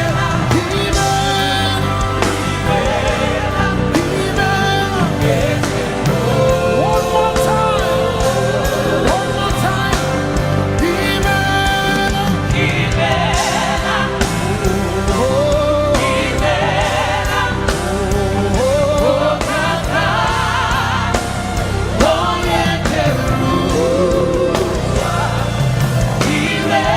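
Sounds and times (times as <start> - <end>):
band with bass and keyboards: 0.0 - 26.9
choir singing with vibrato: 0.0 - 26.9
steady drum beat: 0.0 - 26.9.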